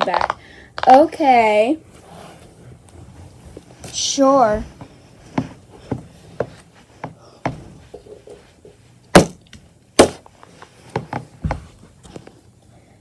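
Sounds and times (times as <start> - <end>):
sharp loud knocks: 9.2 - 10.2.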